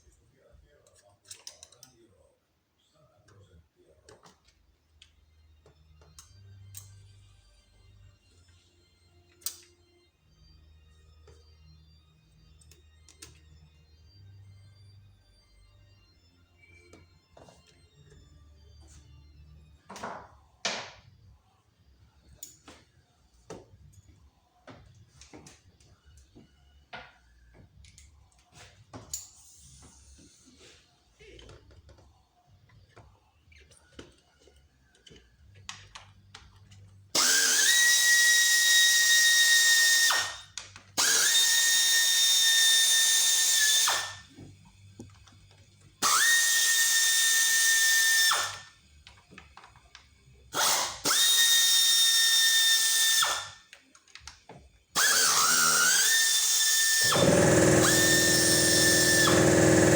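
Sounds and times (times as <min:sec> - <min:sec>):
tools clicking and rattling: 0:00.8 - 0:02.0
electric drill whining: 0:37.2 - 0:44.4, 0:46.0 - 0:48.7, 0:50.5 - 0:53.6, 0:55.0 - 0:59.9.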